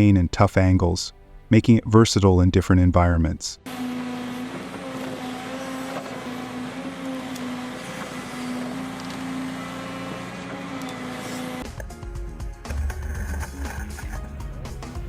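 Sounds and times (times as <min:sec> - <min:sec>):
heavy machine engine humming: 0:03.7 - 0:11.6.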